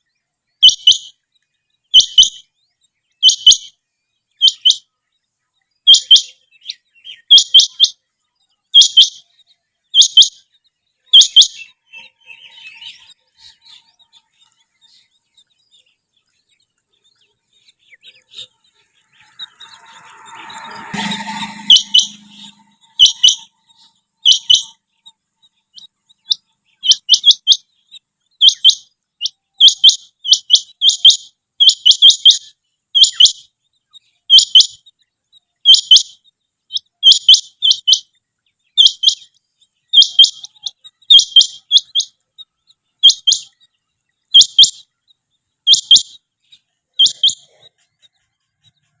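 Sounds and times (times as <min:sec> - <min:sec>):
quail calling: 0:01.9 - 0:02.4, 0:03.2 - 0:03.7, 0:05.9 - 0:08.0, 0:11.1 - 0:15.0, 0:17.2 - 0:24.8, 0:25.7 - 0:27.6, 0:28.4 - 0:33.4, 0:34.3 - 0:34.7, 0:35.6 - 0:36.1, 0:36.7 - 0:38.0, 0:39.9 - 0:42.2, 0:43.0 - 0:43.6, 0:44.3 - 0:44.9, 0:45.7 - 0:46.2, 0:47.0 - 0:48.2.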